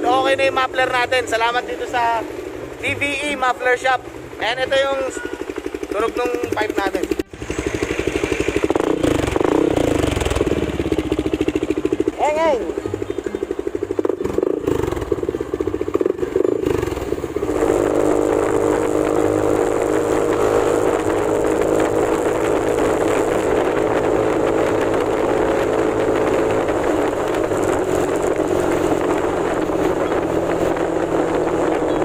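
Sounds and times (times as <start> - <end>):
scooter engine running: 0.0 - 32.0.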